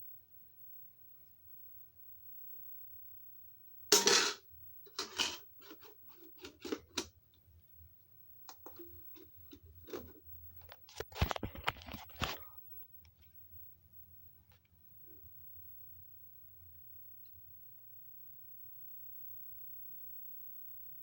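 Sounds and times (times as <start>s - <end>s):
handling rustles scrapes and clicks: 4.9s - 7.0s, 8.5s - 12.4s.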